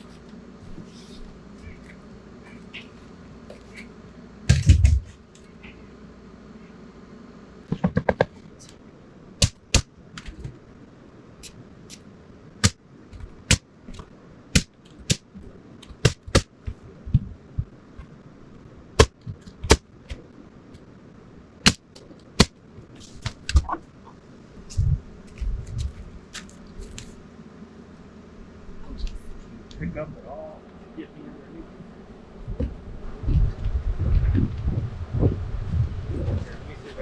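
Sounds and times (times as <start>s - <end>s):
nails driven into wood: 9.4s - 10.3s.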